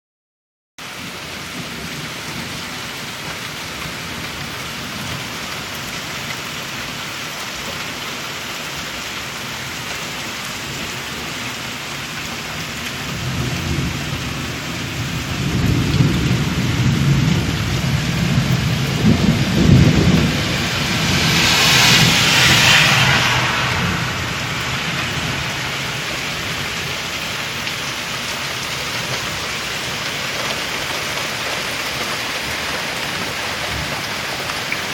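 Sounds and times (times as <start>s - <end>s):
steady rain: 0.8s - 34.9s
rolling thunder: 13.0s - 29.4s
rush of noise: 18.2s - 28.8s.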